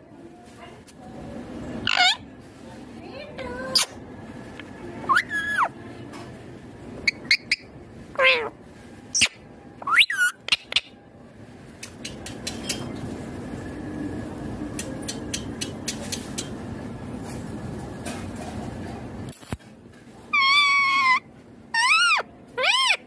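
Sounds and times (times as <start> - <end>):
parrot calling: 1.8 - 2.3, 5.0 - 5.8, 7.0 - 8.5, 9.1 - 11.0, 20.3 - 23.0.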